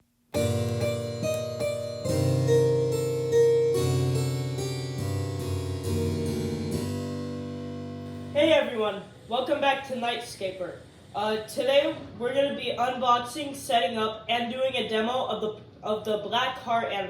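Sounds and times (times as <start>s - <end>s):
harpsichord-like keyboard music: 0.4s - 8.4s.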